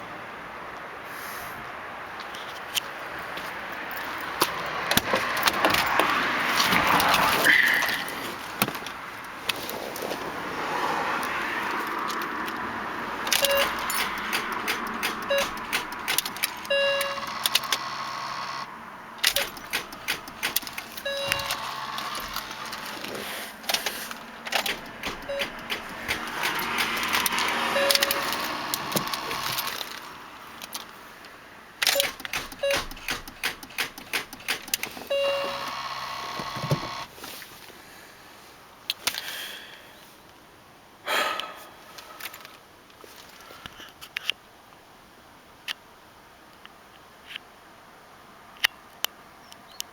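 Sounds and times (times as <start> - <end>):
clicks: 13.2 - 31.0, 31.8 - 37.1
starter motor cranking weakly: 13.3 - 30.1, 32.0 - 37.1
short beeps: 13.4 - 14.0, 15.3 - 15.6, 16.7 - 17.5, 21.0 - 21.8, 25.3 - 25.6, 27.8 - 28.3, 35.1 - 35.7.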